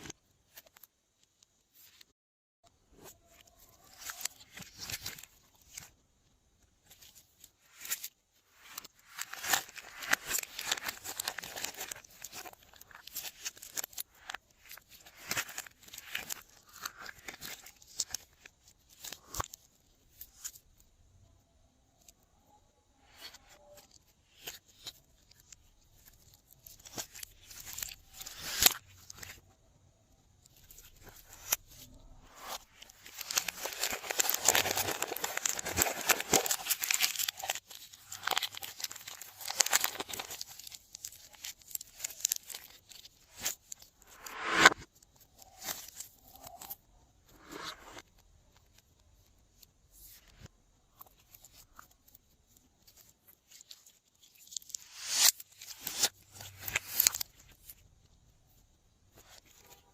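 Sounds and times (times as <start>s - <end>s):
slime crackling and popping: 32.4s - 43.8s.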